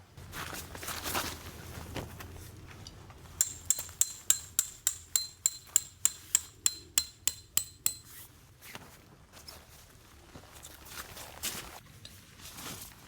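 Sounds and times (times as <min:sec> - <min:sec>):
hammer striking metal tent peg: 0:03.4 - 0:08.2.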